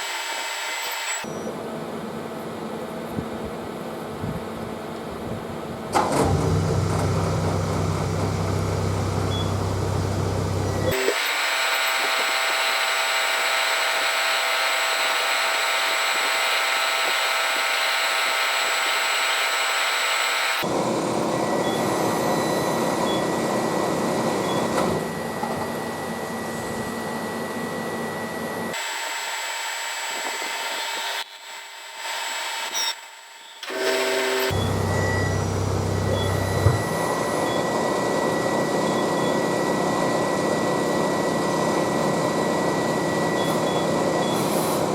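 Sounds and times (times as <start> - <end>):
metal lathe whining: 0.0 - 1.4, 7.8 - 27.3, 27.9 - 44.9.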